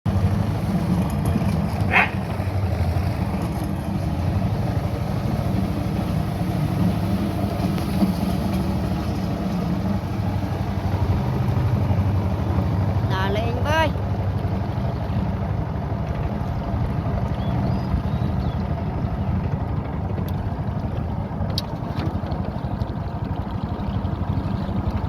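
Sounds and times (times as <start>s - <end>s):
small boat engine running: 0.1s - 25.0s
dog yelp: 1.9s - 2.2s.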